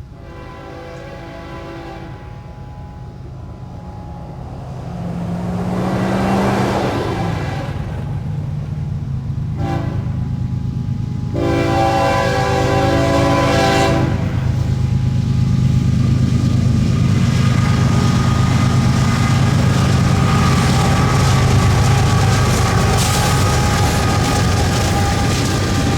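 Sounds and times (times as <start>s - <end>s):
locomotive air horn: 0.0s - 4.4s, 5.4s - 8.6s, 9.5s - 10.4s, 11.3s - 15.0s, 17.6s - 25.9s
diesel locomotive engine rumble: 0.0s - 25.9s.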